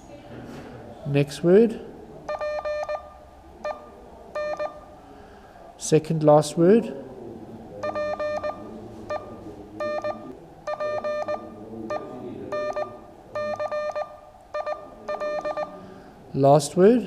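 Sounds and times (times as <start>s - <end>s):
morse code buzzy tone: 2.3s - 4.9s, 7.8s - 15.8s.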